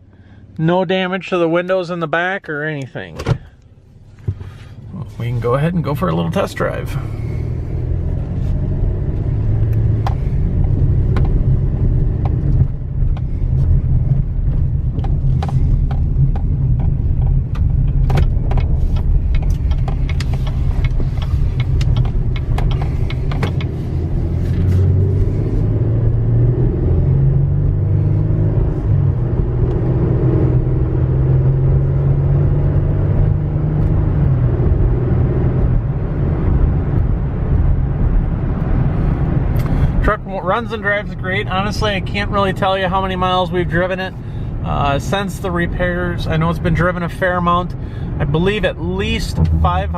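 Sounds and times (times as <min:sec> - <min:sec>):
truck engine and road rumble: 0:00.0 - 0:49.9
sharp clicks and knocks: 0:09.6 - 0:11.5, 0:12.1 - 0:25.1.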